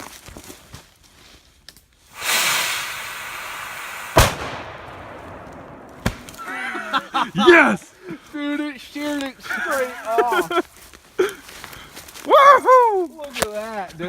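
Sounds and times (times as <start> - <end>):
firework rushing hiss: 2.1 - 6.5
firework bang: 2.2 - 6.5
smaller crack: 4.1 - 6.6.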